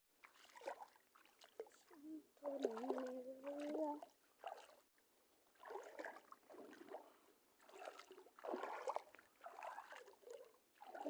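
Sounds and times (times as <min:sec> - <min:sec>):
seawater sloshing from wading: 0:00.2 - 0:04.9, 0:05.6 - 0:11.0.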